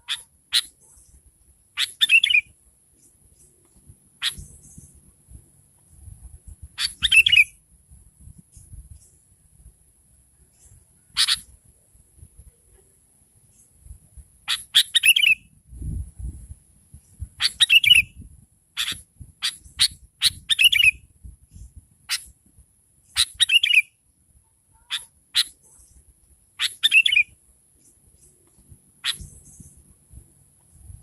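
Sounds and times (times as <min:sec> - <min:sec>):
bulbul chattering call: 0:00.0 - 0:01.1, 0:01.8 - 0:02.5, 0:11.1 - 0:11.5, 0:14.5 - 0:15.4, 0:17.4 - 0:18.1, 0:26.6 - 0:27.3, 0:29.0 - 0:29.8.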